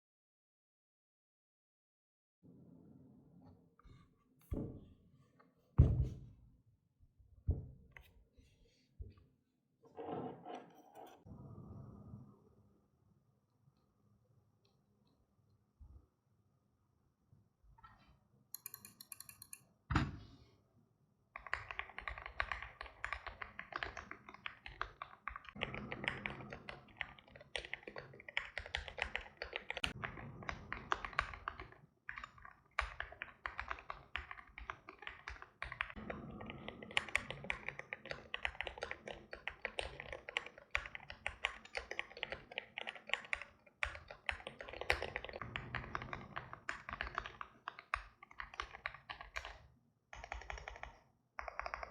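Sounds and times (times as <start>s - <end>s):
fast mechanical keyboard typing: 21.4s - 51.9s.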